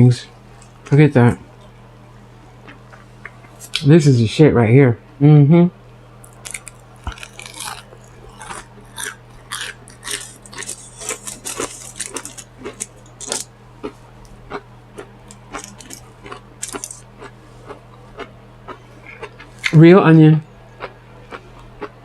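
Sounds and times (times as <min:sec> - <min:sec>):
faint electrical hum: 0:00.0 - 0:22.0
crunchy food chewing: 0:02.6 - 0:03.8, 0:06.2 - 0:19.8, 0:20.8 - 0:22.0.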